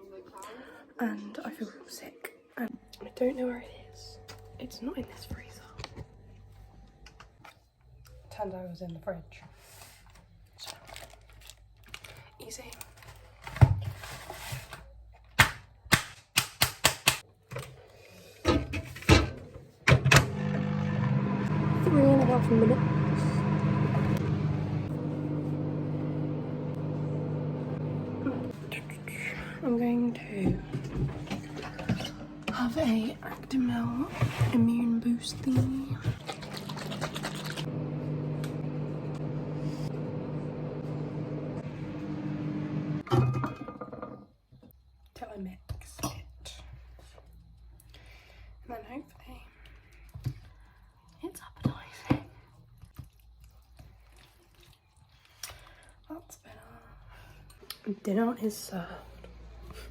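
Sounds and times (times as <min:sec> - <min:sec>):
microwave clicking: 0:19.8 - 0:28.2
microwave oven humming: 0:19.9 - 0:33.6, 0:34.9 - 0:44.2.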